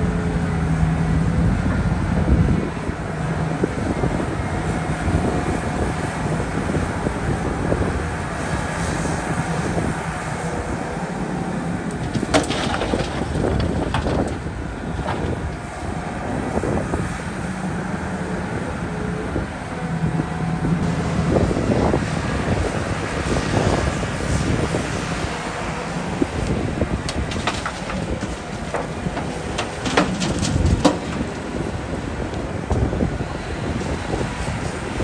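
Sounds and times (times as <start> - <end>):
excavator diesel engine running: 10.4 - 34.8.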